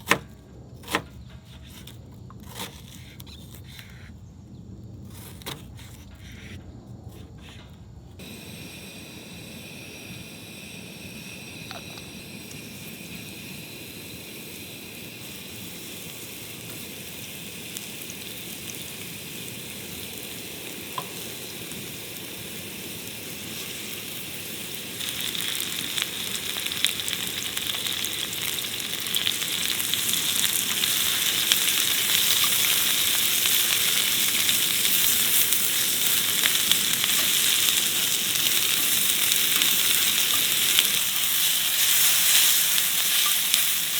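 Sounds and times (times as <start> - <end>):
food sizzling in a pan: 8.2 - 43.9.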